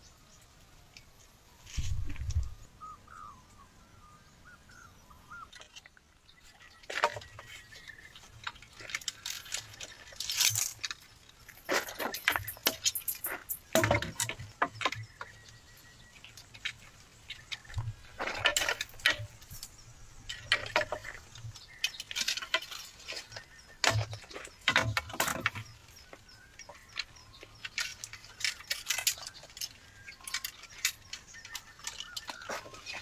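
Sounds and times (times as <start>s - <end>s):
sharp clicks and crackles: 6.8s - 33.0s.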